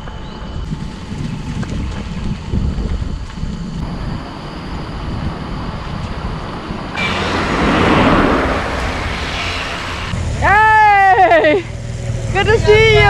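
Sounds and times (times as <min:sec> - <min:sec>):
buzzing cicada chorus: 0:00.0 - 0:13.0
vehicle rumble on road: 0:00.0 - 0:13.0.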